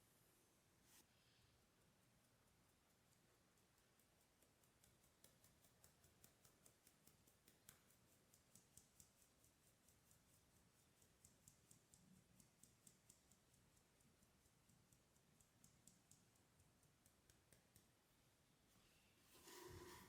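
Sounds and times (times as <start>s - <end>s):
utensil ticking against bowl: 2.5s - 18.2s.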